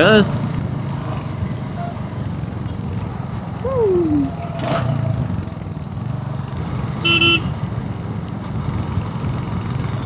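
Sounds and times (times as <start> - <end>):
motorcycle engine running: 0.0 - 10.0
vehicle horn toot: 7.0 - 7.6.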